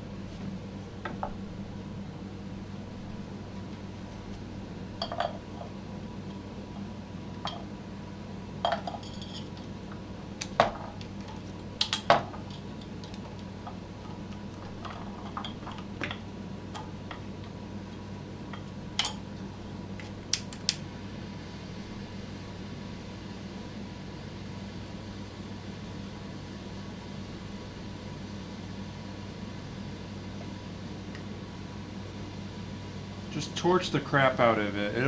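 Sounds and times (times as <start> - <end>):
steady low hum: 0.0 - 35.0
metal tools clinking and clanking: 8.7 - 9.6.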